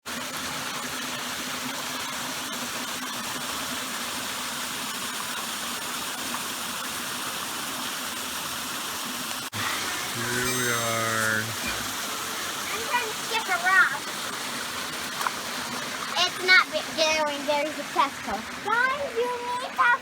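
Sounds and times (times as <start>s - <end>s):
mountain creek rushing water: 9.6s - 20.0s.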